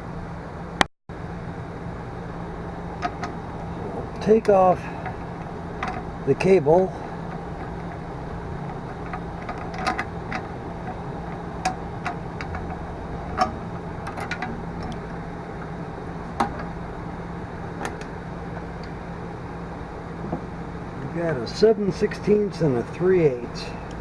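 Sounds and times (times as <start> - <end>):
steady low hum: 0.0 - 24.0
metal parts clicking and tapping: 5.0 - 6.1, 7.2 - 15.1.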